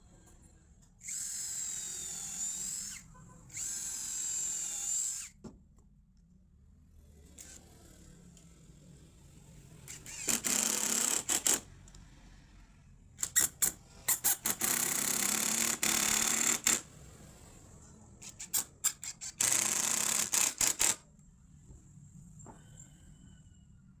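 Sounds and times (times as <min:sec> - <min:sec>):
power drill driving screws: 0:01.0 - 0:05.4, 0:09.9 - 0:11.7, 0:13.2 - 0:17.0, 0:18.2 - 0:21.0
drill trigger blips: 0:10.0 - 0:11.6, 0:18.2 - 0:21.0.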